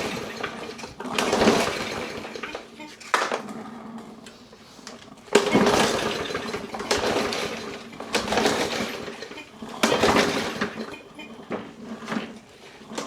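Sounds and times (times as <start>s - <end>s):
engine turning over: 0.0s - 3.6s, 5.2s - 13.0s
recoil starter cord whirring: 5.3s - 13.0s.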